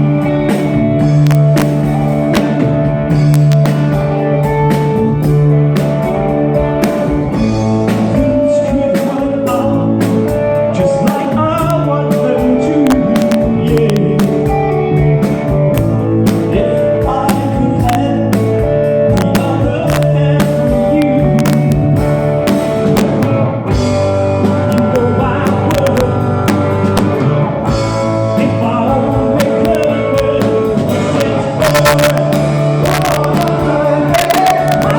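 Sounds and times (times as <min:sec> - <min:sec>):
drum kit: 0:00.0 - 0:34.9
electric guitar: 0:00.0 - 0:34.9
person singing: 0:06.8 - 0:22.2, 0:24.4 - 0:34.9.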